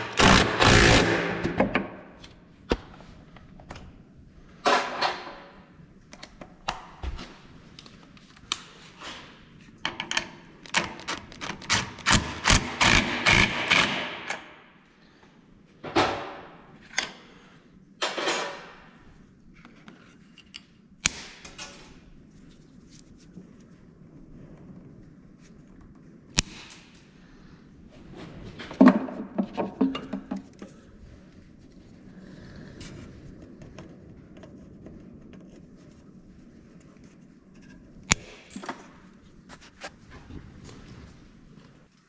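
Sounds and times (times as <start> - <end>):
hand tools knocking and clicking: 28.8 - 30.6.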